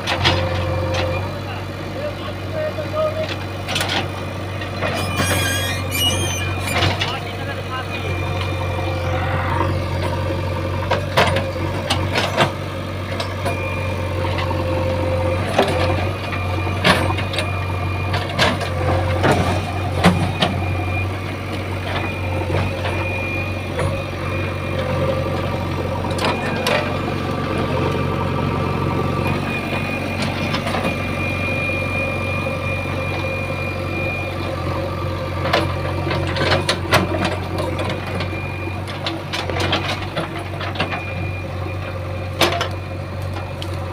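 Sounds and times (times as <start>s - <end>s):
diesel engine running: 0.0s - 43.9s
thin whine: 4.9s - 10.2s.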